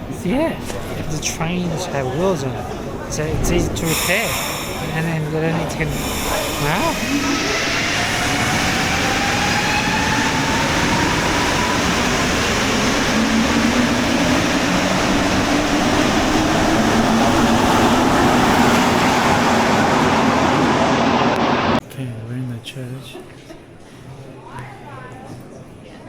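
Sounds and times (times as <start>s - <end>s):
metro train rushing: 2.6s - 21.8s
motor whine rising in pitch: 6.1s - 21.8s.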